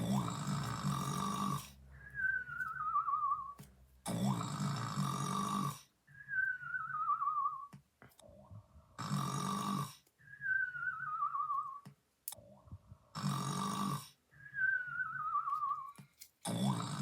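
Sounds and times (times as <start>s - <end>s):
cartoon snoring: 0.0s - 1.8s, 4.0s - 6.0s, 8.8s - 10.0s, 13.0s - 14.2s, 16.4s - 17.0s.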